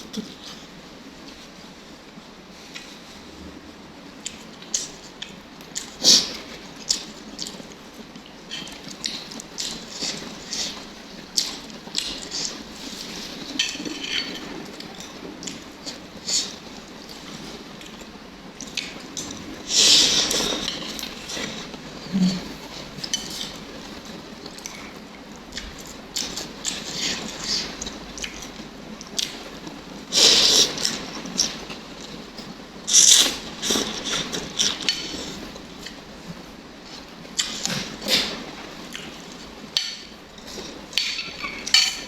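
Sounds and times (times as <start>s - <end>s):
eating noises: 4.2s - 42.0s
utensils clinking against bowl: 13.4s - 15.1s, 39.8s - 42.0s.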